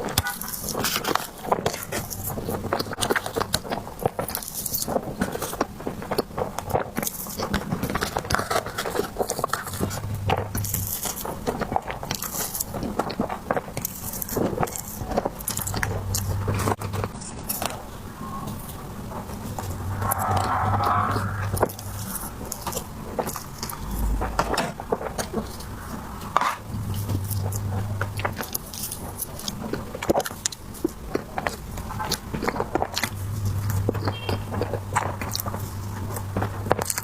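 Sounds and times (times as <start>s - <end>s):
biting and chewing: 26.8s - 37.0s.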